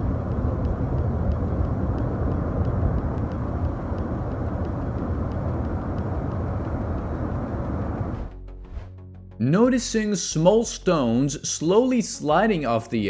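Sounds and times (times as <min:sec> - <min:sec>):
landslide rumble: 0:00.0 - 0:11.2.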